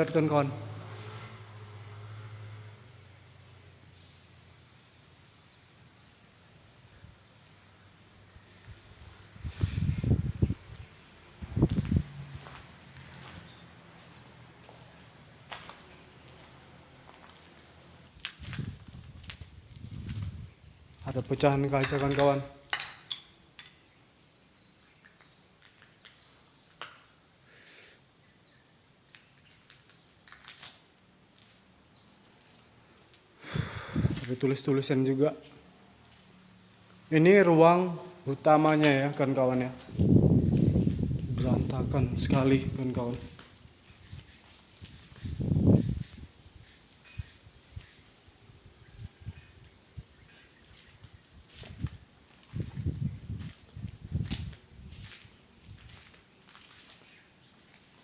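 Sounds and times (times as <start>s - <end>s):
footsteps on debris and broken glass: 11.7s - 16.5s, 54.2s - 58.0s
high chirps of small birds: 39.8s - 57.8s.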